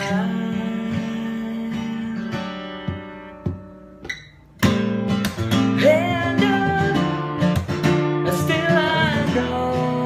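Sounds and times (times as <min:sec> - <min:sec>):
person singing: 0:00.0 - 0:03.0, 0:05.7 - 0:07.6, 0:08.2 - 0:10.0
acoustic guitar strumming: 0:00.0 - 0:10.0.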